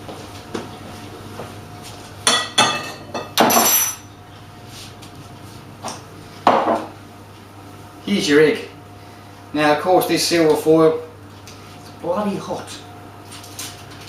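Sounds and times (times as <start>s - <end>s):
glass and kitchenware clinking: 2.3s - 4.1s.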